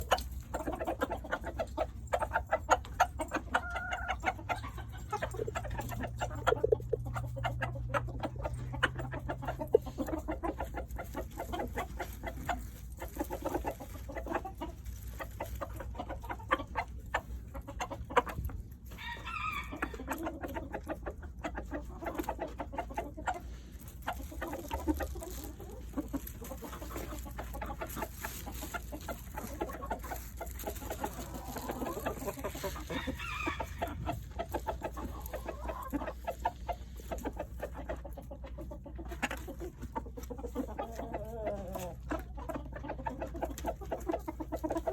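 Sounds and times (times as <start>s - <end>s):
rooster clucking rapidly: 19.2s - 44.9s.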